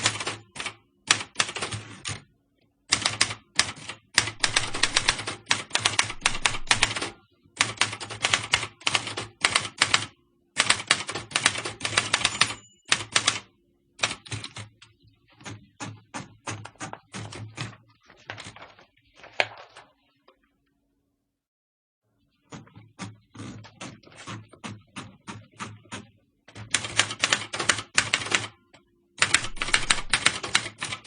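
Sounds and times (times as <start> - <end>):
typewriter key strikes: 4.2 - 7.1, 29.2 - 31.0.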